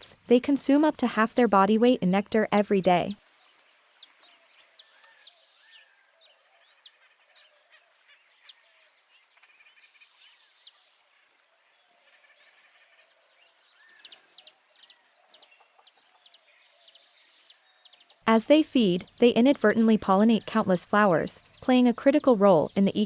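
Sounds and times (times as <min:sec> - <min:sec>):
faint birds chirping: 0:00.0 - 0:23.0
short sharp bird calls: 0:13.8 - 0:18.3
insect high-pitched pulsing trill: 0:13.9 - 0:23.0.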